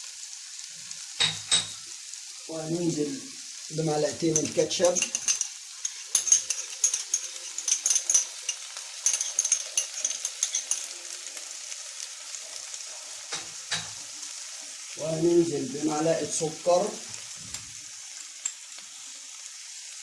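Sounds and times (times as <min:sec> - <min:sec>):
vegetables sizzling in a frying pan: 0:00.0 - 0:20.0
spoon stirring and scraping pan: 0:03.8 - 0:14.9.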